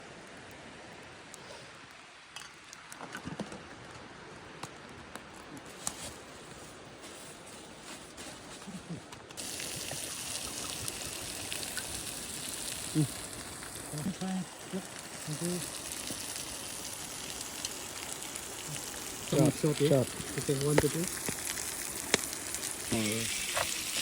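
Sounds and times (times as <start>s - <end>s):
small crackles and ticks: 0.0s - 24.0s
food sizzling over campfire: 5.1s - 24.0s.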